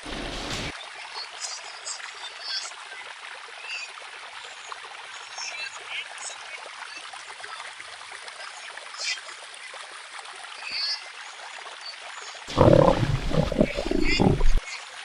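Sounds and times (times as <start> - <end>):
water-like ambience: 0.0 - 0.8, 8.5 - 14.6.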